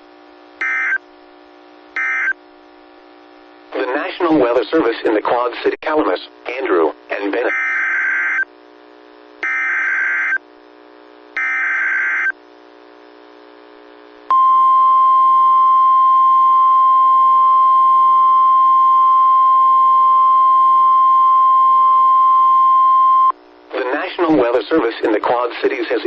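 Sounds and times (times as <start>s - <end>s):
steady warning alarm tone: 0.6s - 1.0s, 2.0s - 2.4s, 7.5s - 8.5s, 9.4s - 10.4s, 11.4s - 12.3s.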